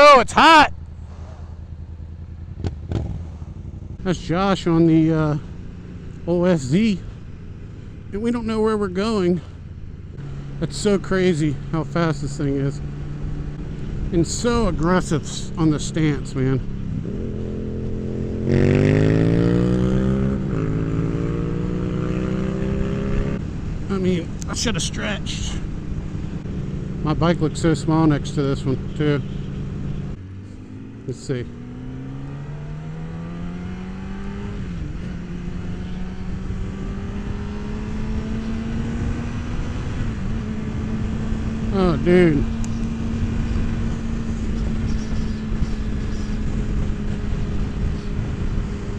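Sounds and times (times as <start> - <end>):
motorcycle engine accelerating: 0.8 - 48.9
motorcycle engine under load: 0.9 - 4.4
wind rush on microphone: 33.8 - 48.9.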